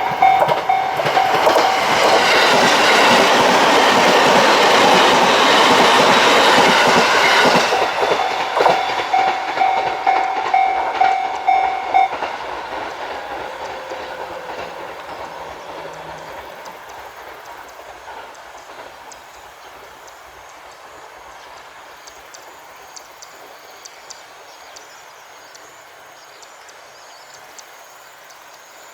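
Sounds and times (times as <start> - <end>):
crossing warning bell ringing: 0.0 - 17.1
train wheel clatter: 0.0 - 22.4.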